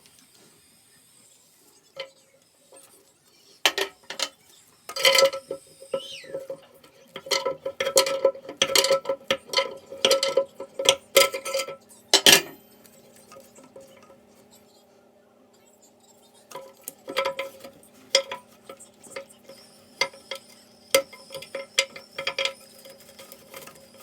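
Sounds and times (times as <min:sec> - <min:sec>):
clinks and knocks of hard objects: 0:03.7 - 0:12.6, 0:16.5 - 0:24.0.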